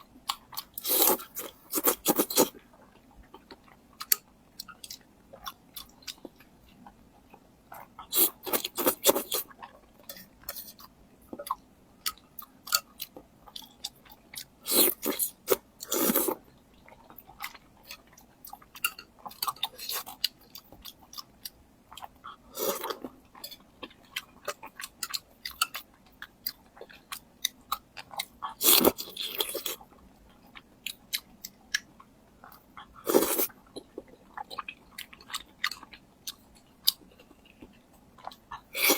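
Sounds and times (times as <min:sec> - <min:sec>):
chewing and crunching food: 0:00.0 - 0:38.9.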